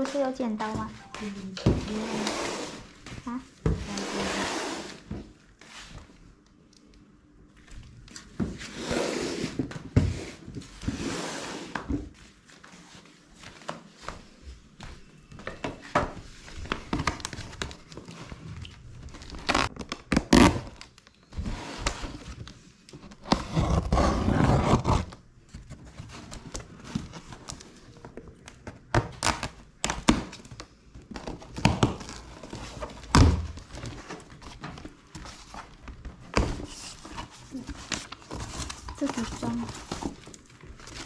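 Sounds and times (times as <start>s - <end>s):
plastic rustle: 31.1s - 41.0s.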